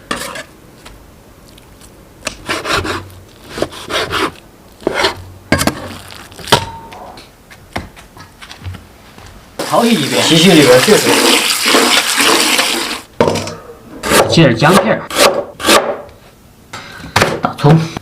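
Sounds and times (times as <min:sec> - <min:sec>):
knife slicing meat: 0:02.3 - 0:05.2
knife chopping on wooden board: 0:14.1 - 0:16.0.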